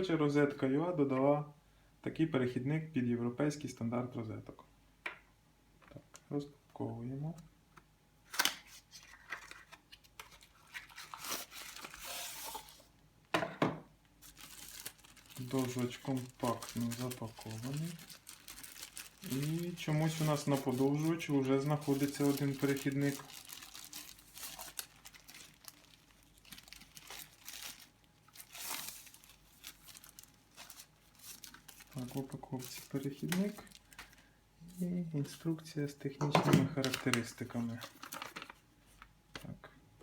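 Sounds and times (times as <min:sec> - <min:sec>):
packaging ripping: 0:08.3 - 0:12.8, 0:14.2 - 0:34.2, 0:36.8 - 0:38.6
rustling tear: 0:14.2 - 0:34.2
packaging crinkles and taps: 0:21.8 - 0:34.2, 0:36.2 - 0:39.5.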